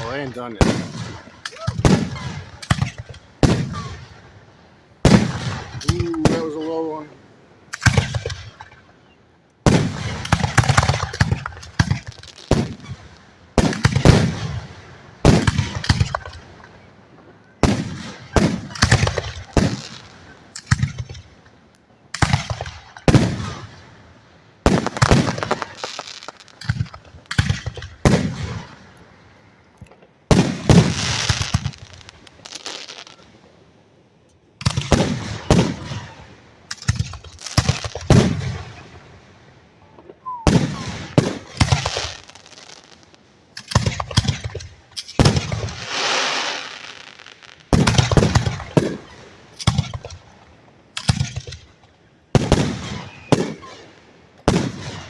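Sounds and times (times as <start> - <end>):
firework shells bursting: 24.7 - 29.0.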